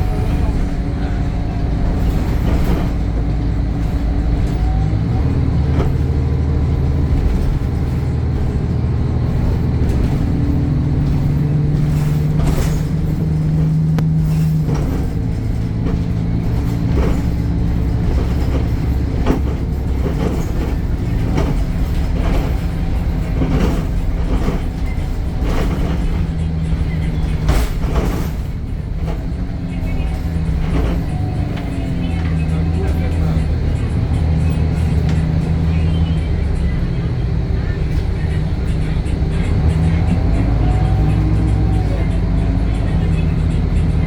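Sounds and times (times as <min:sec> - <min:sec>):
bus diesel engine: 0:00.0 - 0:44.0
knocks and rattles: 0:00.0 - 0:44.0.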